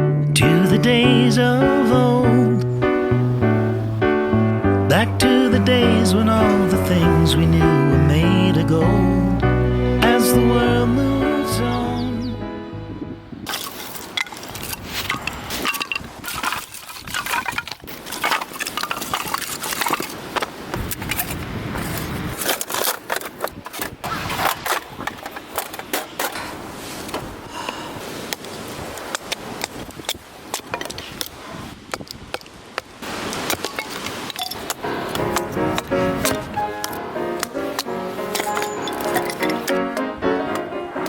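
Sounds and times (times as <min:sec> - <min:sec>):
firewood crackling: 0:01.3 - 0:08.7, 0:13.5 - 0:41.0
steady rushing noise: 0:02.7 - 0:07.3, 0:24.0 - 0:41.0.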